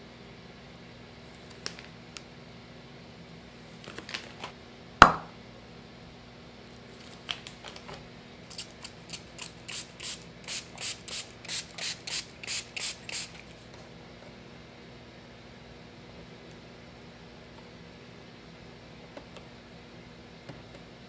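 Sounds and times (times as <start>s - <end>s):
short hissing bursts: 8.5s - 13.4s.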